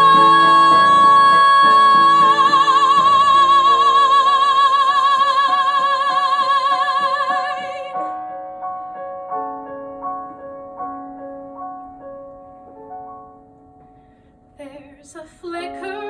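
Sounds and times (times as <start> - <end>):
piano accompaniment: 0.0 - 16.0.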